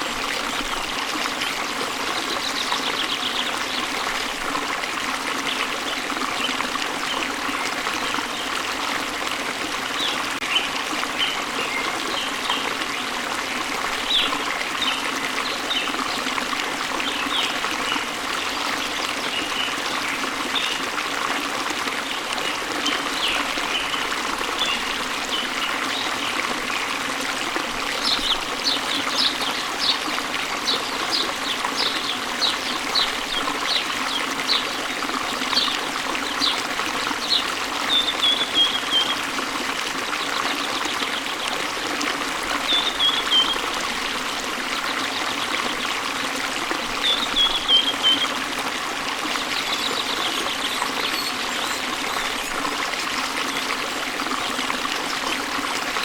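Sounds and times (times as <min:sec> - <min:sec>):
small waterfall splashing: 0:00.0 - 0:56.0
birds chirping: 0:49.4 - 0:52.6.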